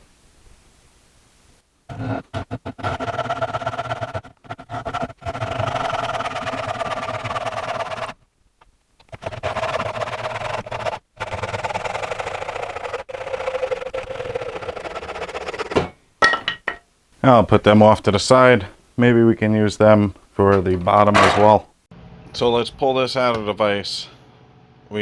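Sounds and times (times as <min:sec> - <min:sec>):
hand saw cutting wood: 0:01.9 - 0:08.2, 0:09.1 - 0:15.9.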